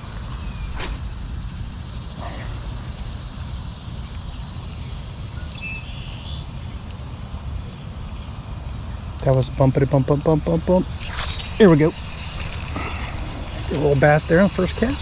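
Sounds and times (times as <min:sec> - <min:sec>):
low outdoor rumble: 0:00.0 - 0:15.0
bird whistle sliding downward: 0:02.0 - 0:02.7
faint bird chirps: 0:02.0 - 0:03.2, 0:04.0 - 0:06.9, 0:10.9 - 0:15.0.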